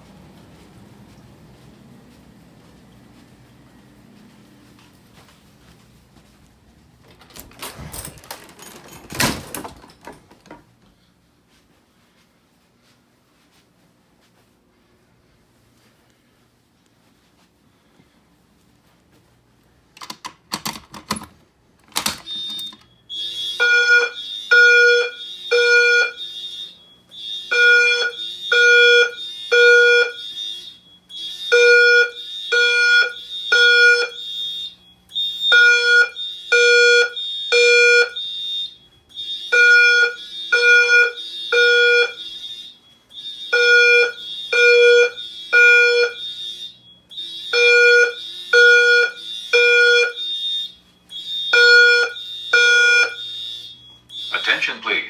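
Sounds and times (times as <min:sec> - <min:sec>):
alarm activation clicks: 0:20.0 - 0:23.0
fire alarm horn pulses: 0:21.9 - 0:55.0.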